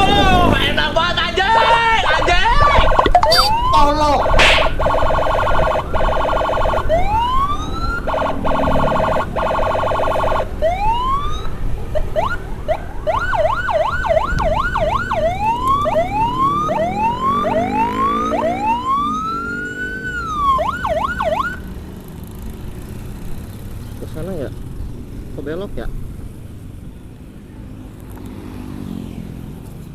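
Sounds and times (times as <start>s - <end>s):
road and engine rumble: 0.0s - 29.9s
ambulance siren: 1.4s - 21.7s.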